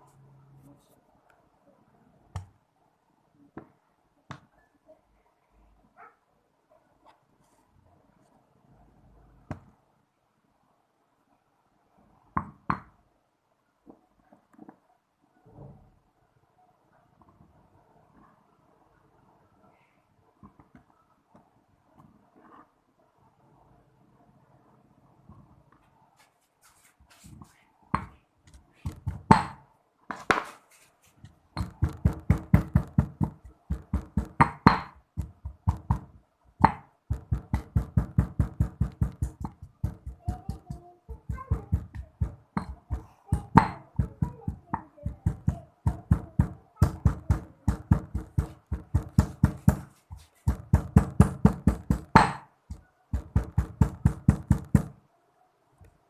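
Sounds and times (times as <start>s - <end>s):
pestle pounding in a mortar: 28.8s - 29.6s, 31.6s - 55.0s.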